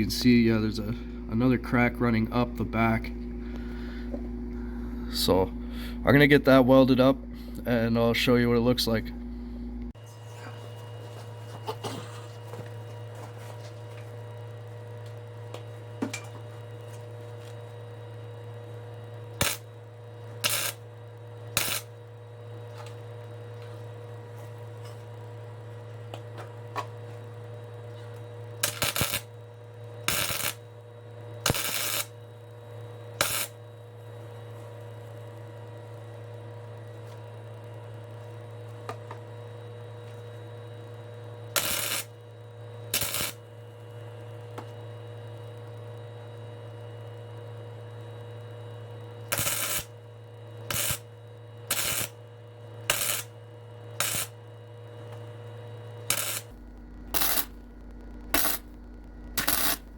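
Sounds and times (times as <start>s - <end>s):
electrical hum: 0.0s - 59.9s
welding crackling bursts: 19.4s - 19.7s, 20.4s - 20.8s, 21.5s - 22.0s, 28.6s - 29.3s, 30.0s - 30.7s, 31.4s - 32.2s, 33.2s - 33.6s, 41.5s - 42.2s, 42.9s - 43.4s, 49.2s - 50.0s, 50.6s - 51.1s, 51.7s - 52.2s, 52.8s - 53.4s, 54.0s - 54.4s, 56.0s - 59.9s.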